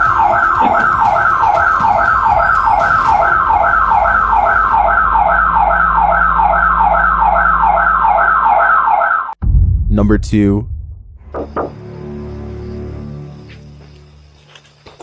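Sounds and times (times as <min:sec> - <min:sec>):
security alarm siren sweeping: 0:00.0 - 0:09.4.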